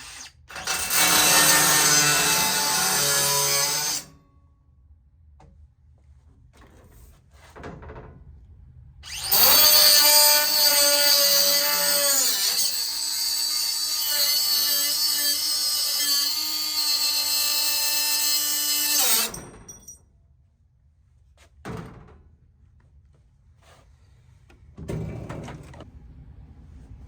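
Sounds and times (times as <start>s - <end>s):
electric power tool motor whine: 9.0s - 19.3s.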